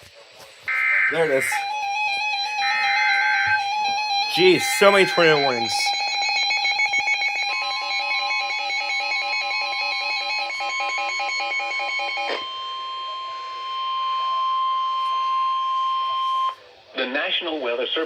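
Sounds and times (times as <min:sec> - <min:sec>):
pulsing electronic alert beep: 0:00.7 - 0:13.8
steady warning alarm tone: 0:00.7 - 0:16.6.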